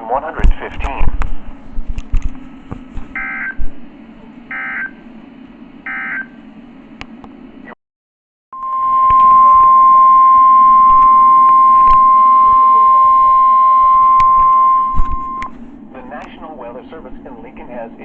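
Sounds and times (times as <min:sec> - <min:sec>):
steady warning alarm tone: 0:03.2 - 0:03.6, 0:04.5 - 0:05.0, 0:05.8 - 0:06.4, 0:08.6 - 0:15.6
screeching data bursts: 0:08.6 - 0:15.5.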